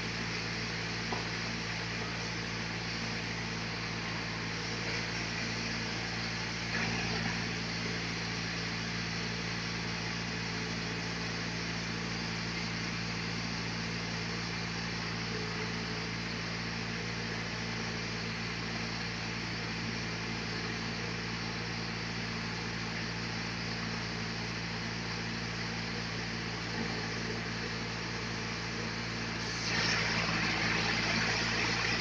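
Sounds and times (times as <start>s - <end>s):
sawmill machinery humming: 0.0s - 13.2s, 25.3s - 32.0s.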